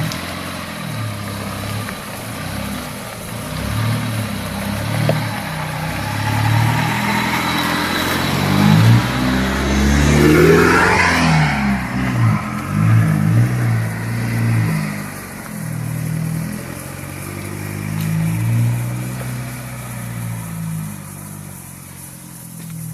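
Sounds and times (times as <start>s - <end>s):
diesel engine revving: 0.0s - 22.9s.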